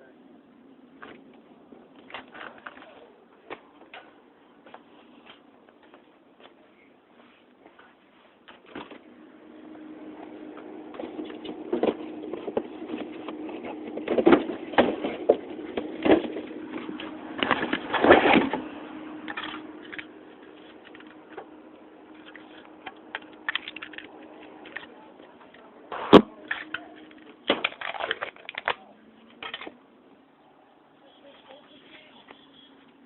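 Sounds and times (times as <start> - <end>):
hydraulics humming: 8.4 - 33.0.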